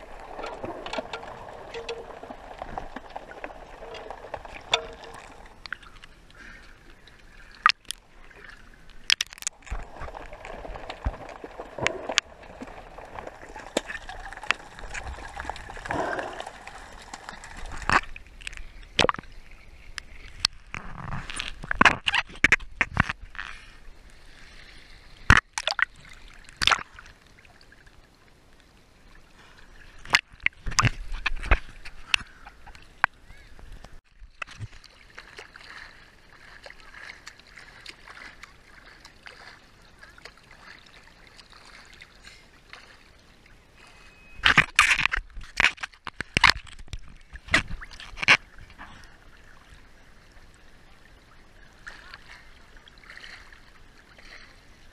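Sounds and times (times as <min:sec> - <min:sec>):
water sloshing and gurgling: 0:00.0 - 0:54.9
water splashes: 0:00.0 - 0:54.9.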